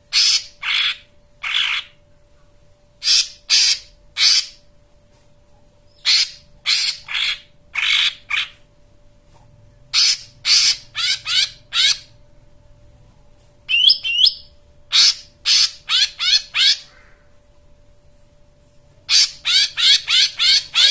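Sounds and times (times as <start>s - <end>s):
faint steady hum: 0.0s - 20.9s
bird song scratchy notes: 13.7s - 16.9s, 19.1s - 20.9s.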